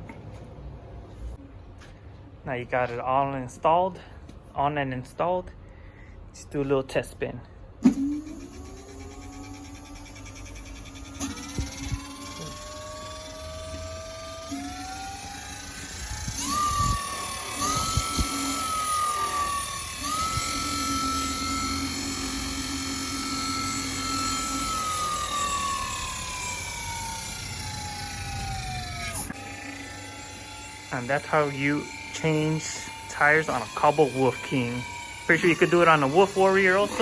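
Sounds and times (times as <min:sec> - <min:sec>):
electric motor whining: 0:07.8 - 0:37.0.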